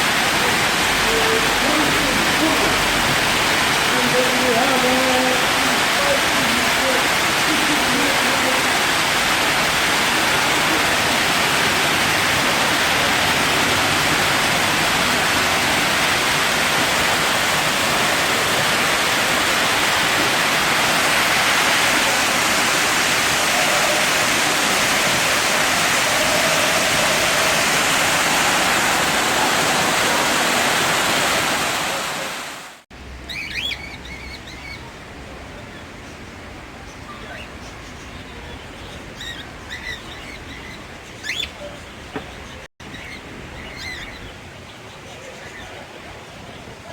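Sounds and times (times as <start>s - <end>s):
rush of falling water: 0.0s - 46.9s.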